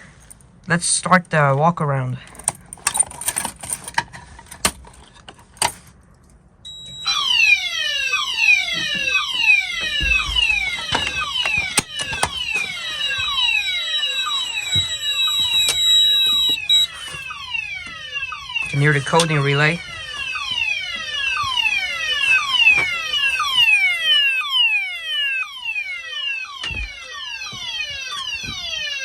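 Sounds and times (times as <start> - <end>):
fire alarm falling sweeps: 6.6 - 29.0
steady high-pitched tone: 6.7 - 25.0.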